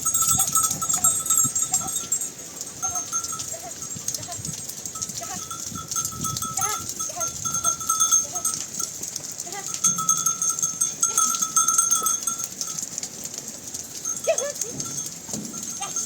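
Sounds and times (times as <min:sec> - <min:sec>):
high ringing tone: 0:09.7 - 0:12.8.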